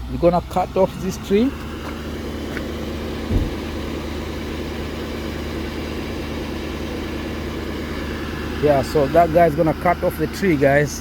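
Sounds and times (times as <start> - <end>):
heavy engine idling: 0.0 - 11.0
short low thump: 3.2 - 3.7.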